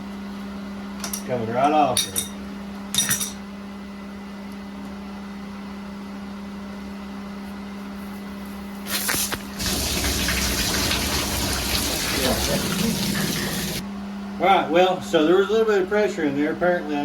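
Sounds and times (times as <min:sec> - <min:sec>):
water hissing and spraying: 0:08.9 - 0:13.8.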